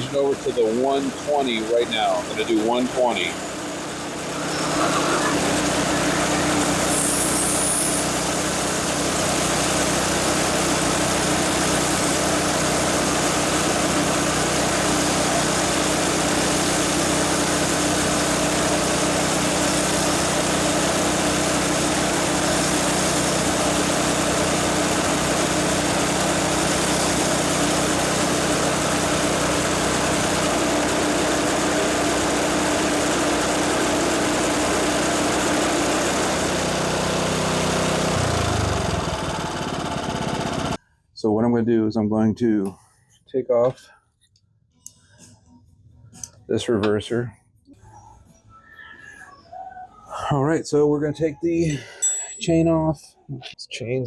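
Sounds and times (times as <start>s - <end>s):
reel mower engine running: 0.0s - 40.8s.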